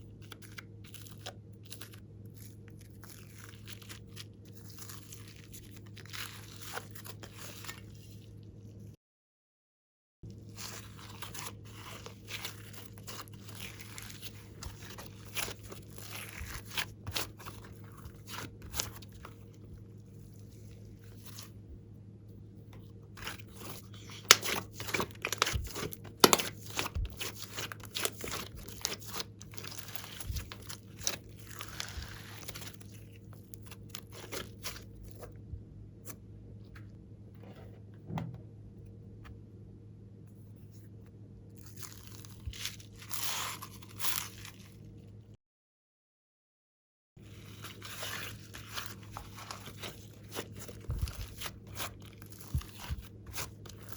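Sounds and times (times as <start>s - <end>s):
slime being kneaded by hand: 0.2s - 8.2s, 10.4s - 21.5s, 22.7s - 35.3s, 41.6s - 44.8s, 47.2s - 53.9s
faint low hum: 10.3s - 45.4s.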